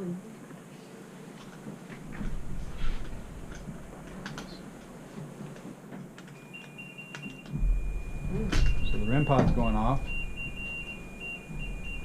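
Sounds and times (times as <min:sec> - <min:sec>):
high electronic alarm tone: 0:06.4 - 0:12.0.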